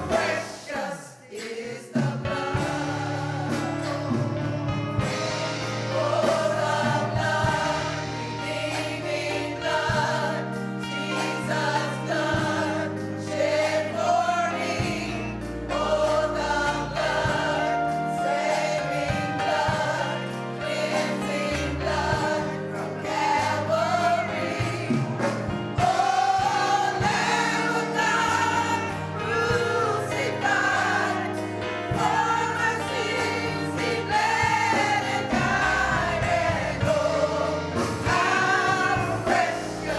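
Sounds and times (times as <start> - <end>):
instrumental accompaniment: 0.0 - 0.6, 2.0 - 39.9
choir singing gospel song: 0.0 - 39.9.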